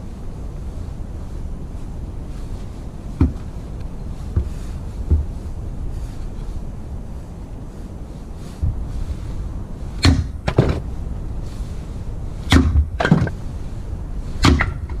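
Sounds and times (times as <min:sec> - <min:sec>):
axe chopping firewood: 0:10.0 - 0:10.8, 0:12.5 - 0:13.4, 0:14.4 - 0:15.0.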